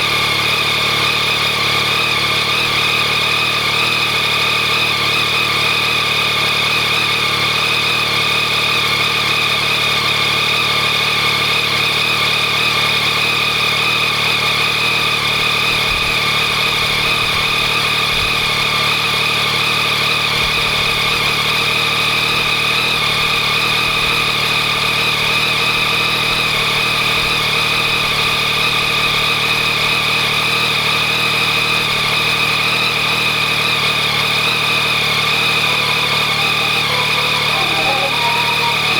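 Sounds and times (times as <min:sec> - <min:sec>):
motorcycle engine idling: 0:31.1 - 0:38.9.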